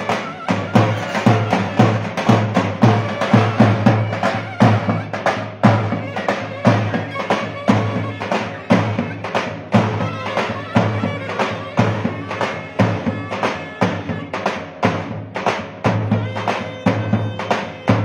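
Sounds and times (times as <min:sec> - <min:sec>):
deep bass drum beats: 0:00.0 - 0:18.0
shrill reed-pipe melody: 0:00.0 - 0:18.0.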